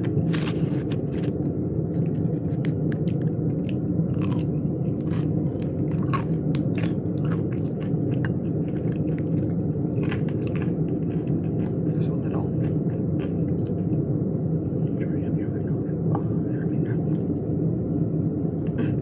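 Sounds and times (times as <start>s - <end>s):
chewing and biting food: 0.0s - 14.1s
steady low hum: 0.0s - 19.0s.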